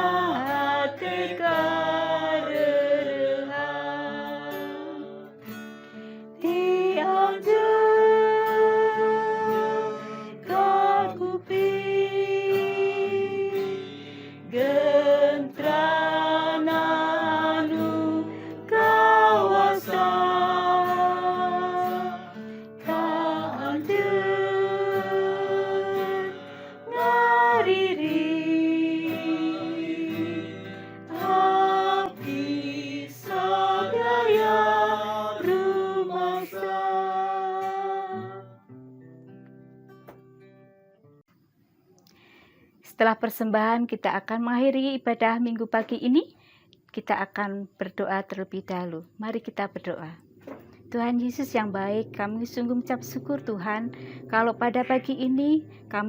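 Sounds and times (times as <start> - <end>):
person singing a hymn: 0.0 - 5.5, 6.4 - 38.6
acoustic guitar: 0.0 - 56.0.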